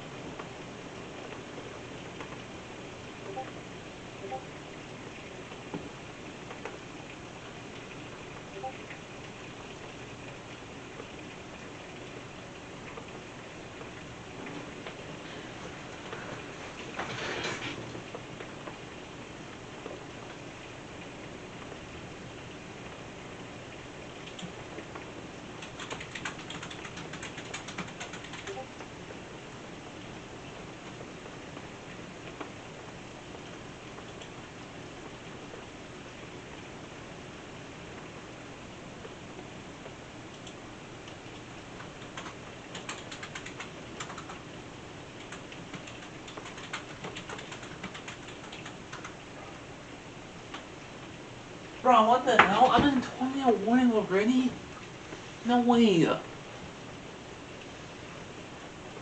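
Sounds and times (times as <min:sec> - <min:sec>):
rain hissing: 0:00.0 - 0:59.0
quick light clicks and taps: 0:24.2 - 0:28.6, 0:40.3 - 0:41.2, 0:41.8 - 0:44.4, 0:45.2 - 0:49.2
light clicks and taps: 0:39.8 - 0:44.4.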